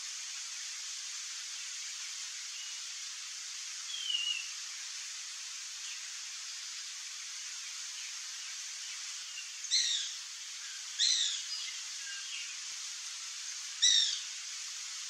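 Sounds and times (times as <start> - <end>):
steady background hiss: 0.0 - 15.0.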